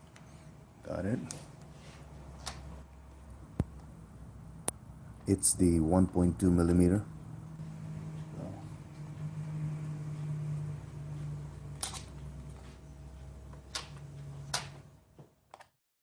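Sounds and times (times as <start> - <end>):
low steady hum: 0.0 - 15.7.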